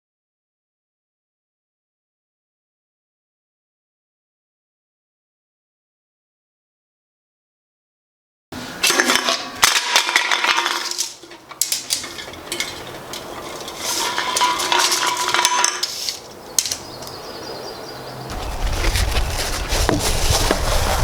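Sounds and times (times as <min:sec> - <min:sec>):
metal scraping: 0:08.6 - 0:17.3, 0:18.3 - 0:21.0
metal objects clinking: 0:08.8 - 0:17.2.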